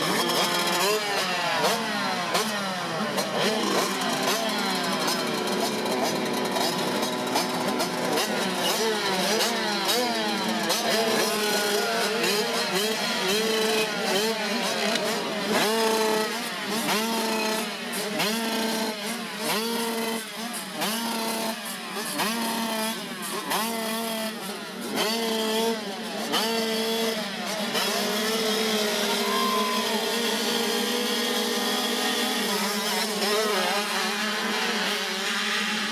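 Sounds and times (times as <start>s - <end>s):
motocross bikes revving: 0.0s - 35.9s.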